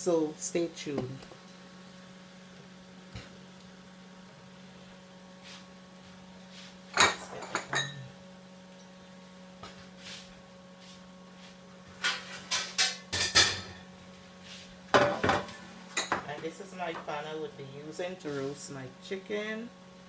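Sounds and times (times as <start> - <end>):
metal cookware clattering: 12.0 - 13.8, 15.0 - 16.2.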